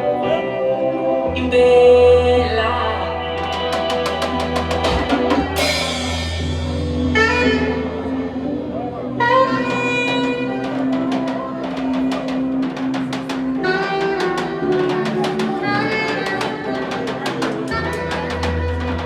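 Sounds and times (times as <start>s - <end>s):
live band playing: 2.8s - 19.0s
drum kit beat: 3.4s - 8.0s, 9.2s - 19.0s.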